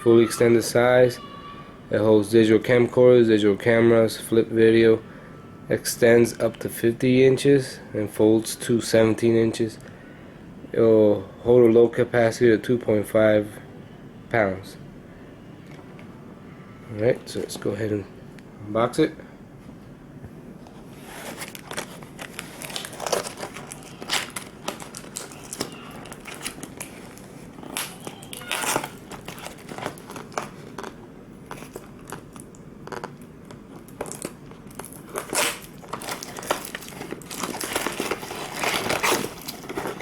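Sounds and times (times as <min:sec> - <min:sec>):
packaging crinkling and rustling: 0:20.7 - 0:40.0.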